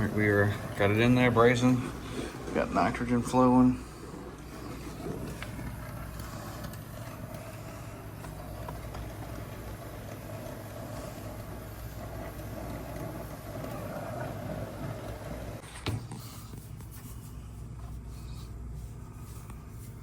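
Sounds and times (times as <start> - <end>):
torch flame burning: 0.0 - 16.0.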